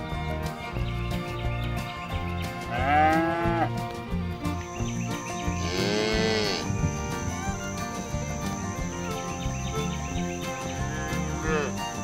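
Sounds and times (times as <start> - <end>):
cow mooing: 2.7 - 3.7, 5.6 - 6.8, 10.8 - 11.8.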